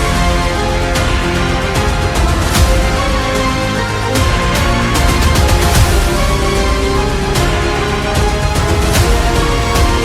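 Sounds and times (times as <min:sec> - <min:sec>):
music with strong bass and beat: 0:00.0 - 0:10.0.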